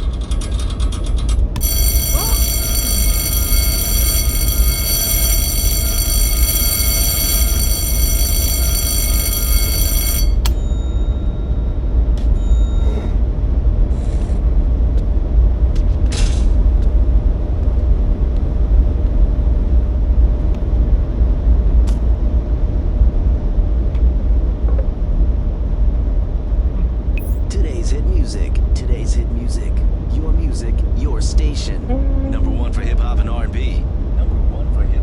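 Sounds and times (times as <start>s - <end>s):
buzzing tone: 1.6s - 11.3s, 31.6s - 33.0s
low vehicle rumble: 29.8s - 35.0s.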